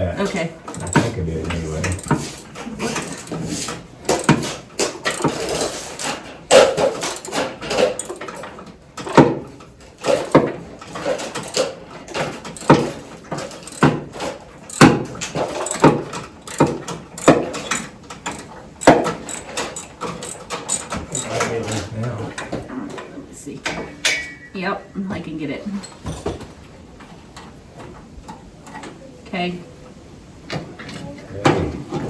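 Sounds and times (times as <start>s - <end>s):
wrench clacking against metal: 0.6s - 9.3s, 10.1s - 21.9s.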